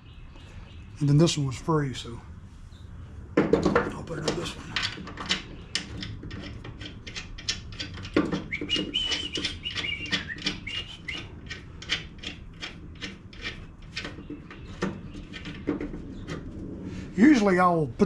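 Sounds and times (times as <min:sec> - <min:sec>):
wavering high squeak: 0:08.4 - 0:11.4.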